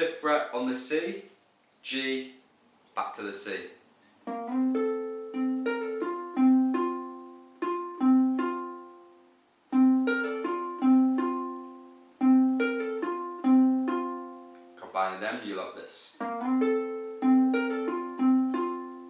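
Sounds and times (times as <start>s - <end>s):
ukulele fingerpicked: 4.2s - 14.8s, 16.2s - 19.0s.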